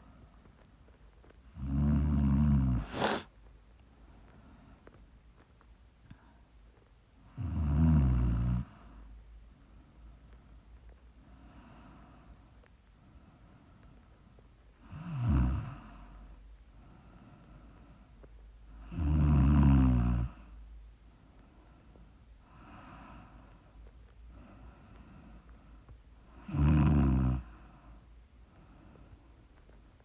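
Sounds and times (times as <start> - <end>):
woman snoring: 1.6 - 3.2, 18.9 - 20.4, 26.4 - 27.5
soft breathing: 2.7 - 3.3, 16.6 - 18.4, 21.0 - 26.1, 27.4 - 30.0.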